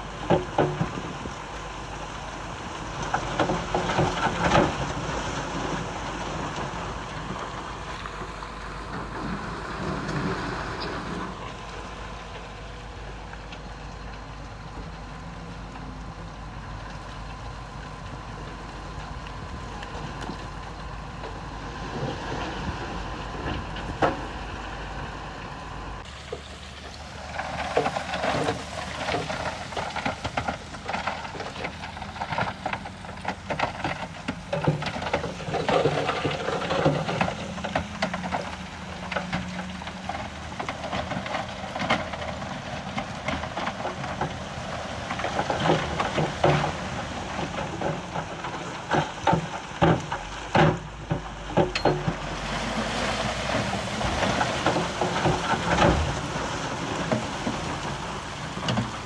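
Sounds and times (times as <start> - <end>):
diesel engine running: 0.0 - 59.0
stone and metal clattering: 51.7 - 52.2.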